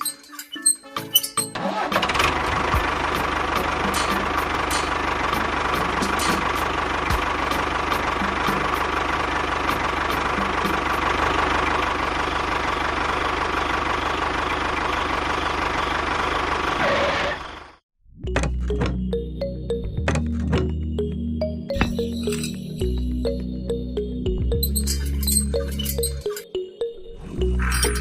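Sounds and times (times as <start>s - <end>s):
music: 0.0s - 11.2s, 18.1s - 28.0s.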